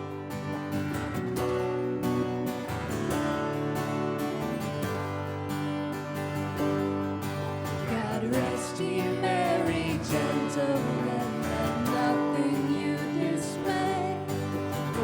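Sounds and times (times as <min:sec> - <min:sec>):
instrumental worship music chords: 0:07.8 - 0:15.0
person singing: 0:07.9 - 0:15.0.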